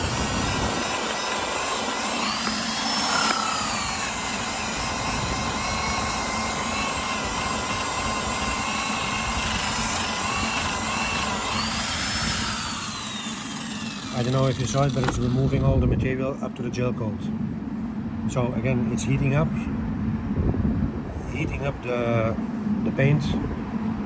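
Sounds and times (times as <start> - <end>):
disc grinder whining grind: 0.0 - 15.8.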